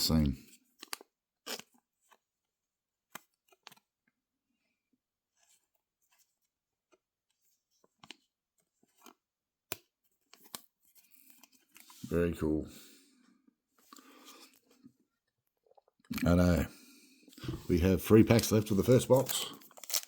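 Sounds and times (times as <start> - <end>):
trading cards being handled: 3.1 - 3.9, 7.7 - 12.2, 17.4 - 20.0.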